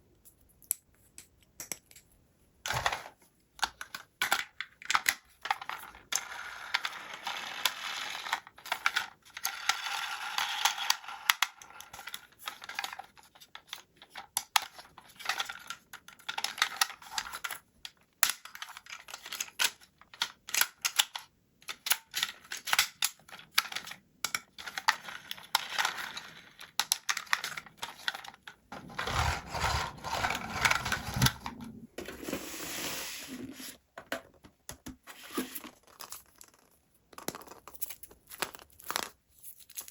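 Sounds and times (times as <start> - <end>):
packaging rustling: 28.7 - 33.7.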